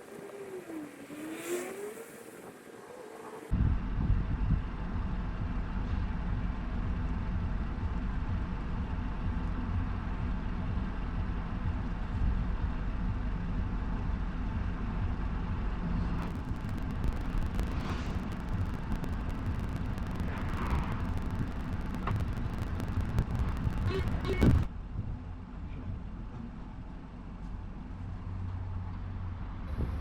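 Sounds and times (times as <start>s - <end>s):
car engine running: 16.2s - 24.7s.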